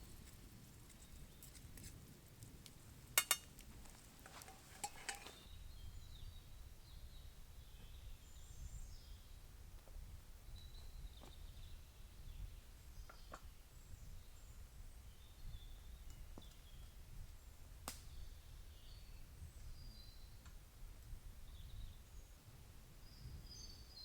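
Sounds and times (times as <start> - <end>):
metallic clinks on a pot: 3.2 - 3.6, 4.2 - 5.4.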